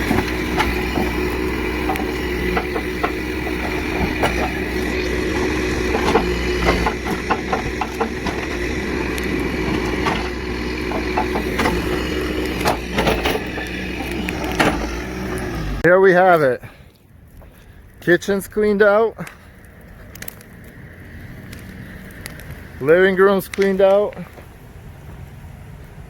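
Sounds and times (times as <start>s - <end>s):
wood cracking and breaking: 0.0s - 15.8s, 19.2s - 24.5s
machine engine running: 0.0s - 15.9s.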